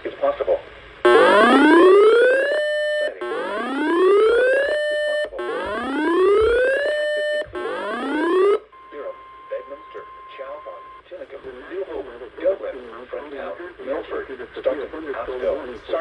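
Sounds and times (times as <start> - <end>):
whooping electronic alert siren: 1.1 - 11.0.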